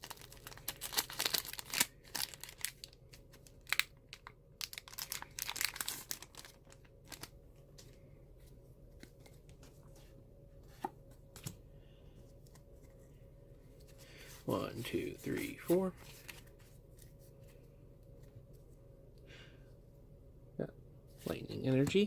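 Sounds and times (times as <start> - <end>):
packaging tearing and crinkling: 0.0 - 7.3.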